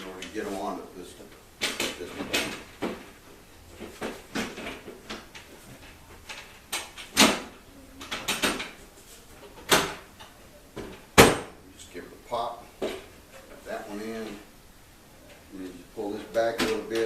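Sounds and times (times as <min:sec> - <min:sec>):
wooden panels knocking and clattering: 0:01.6 - 0:08.8, 0:09.4 - 0:11.5.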